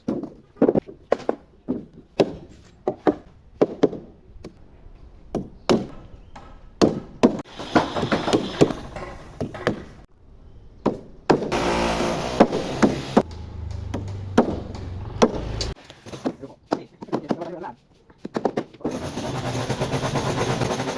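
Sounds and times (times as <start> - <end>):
tool knocking on wood: 12.4 - 15.7.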